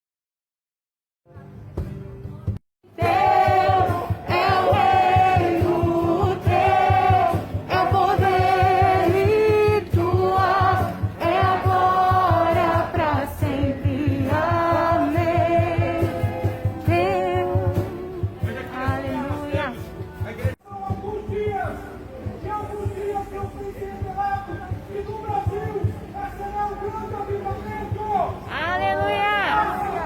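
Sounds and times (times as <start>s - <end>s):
group singing worship song: 2.9s - 19.0s.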